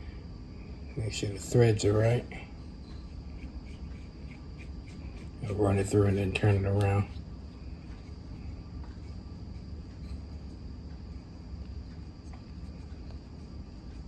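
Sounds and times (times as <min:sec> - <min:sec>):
crickets trilling: 0:00.0 - 0:14.0
low steady hum: 0:00.0 - 0:14.0.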